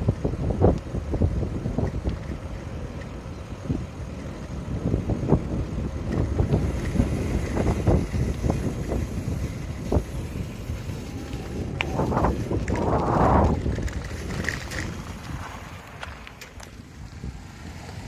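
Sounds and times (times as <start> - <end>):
wind on microphone: 0.0 - 18.0
low rumble: 5.0 - 17.4
bicycle knocks and rattles: 12.4 - 16.9.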